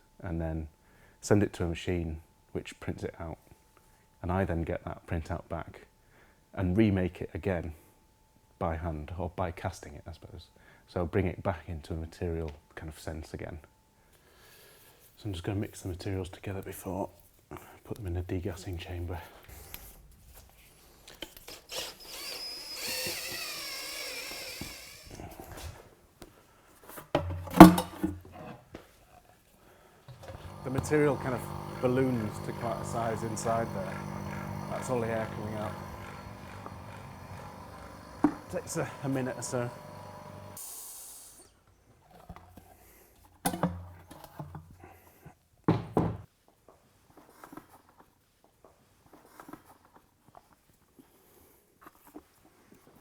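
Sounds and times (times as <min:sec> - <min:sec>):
electric mixer whining: 0:21.8 - 0:25.2, 0:30.2 - 0:40.6
workshop equipment knocking: 0:30.2 - 0:40.6.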